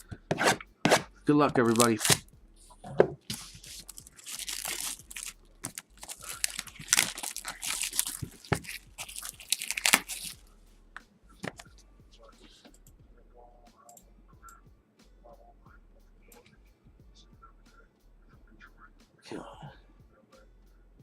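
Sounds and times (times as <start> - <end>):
plastic wrapping tearing and crinkling: 1.6 - 2.2, 3.2 - 10.4.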